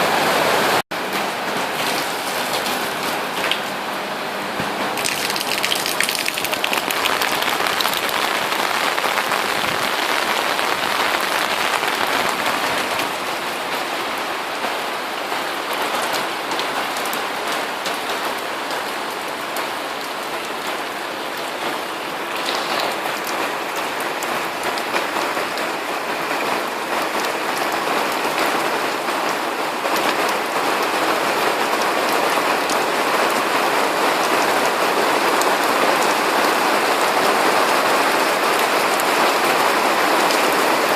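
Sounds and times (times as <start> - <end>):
steady rain: 0.0 - 40.9.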